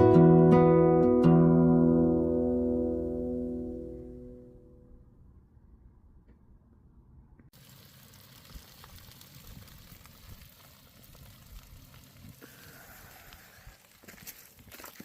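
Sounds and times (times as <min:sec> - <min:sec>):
food sizzling on a grill: 0:07.6 - 0:13.9.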